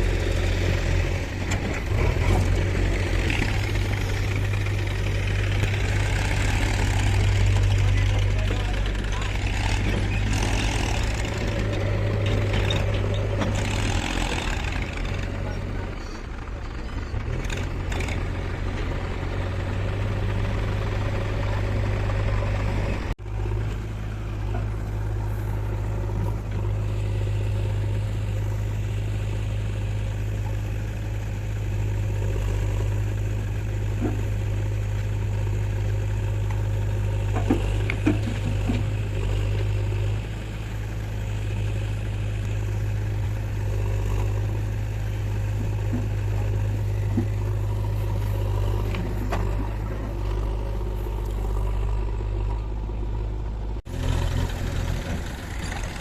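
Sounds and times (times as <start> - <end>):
diesel engine droning: 0.0 - 56.0.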